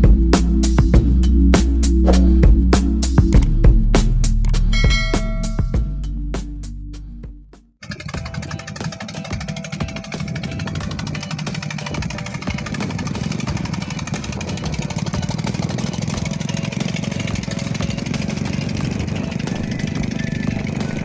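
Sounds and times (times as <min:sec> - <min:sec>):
small engine pulsing: 0:07.8 - 0:21.0.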